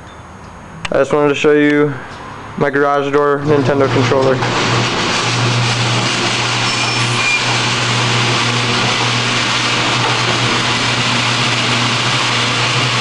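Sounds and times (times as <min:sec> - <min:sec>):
garage door opener motor whirring: 0:03.3 - 0:13.0.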